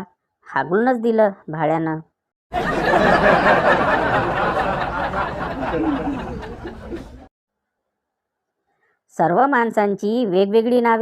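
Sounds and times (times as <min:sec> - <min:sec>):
crowd laughing: 0:02.5 - 0:07.3.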